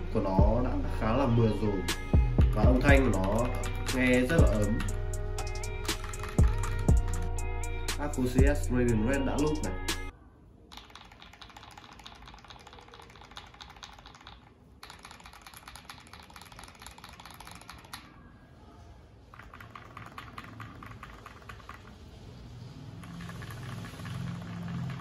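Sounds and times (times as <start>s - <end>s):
mechanical keyboard keystroke clacks: 10.7s - 18.0s, 19.3s - 21.9s.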